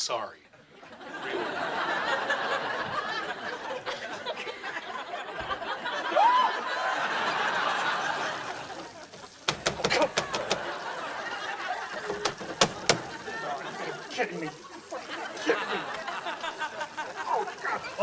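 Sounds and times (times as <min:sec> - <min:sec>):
studio audience laughing: 0:00.5 - 0:18.0
rising cry: 0:06.0 - 0:06.9
sharp clicks or knocks: 0:09.4 - 0:10.7, 0:12.0 - 0:13.2.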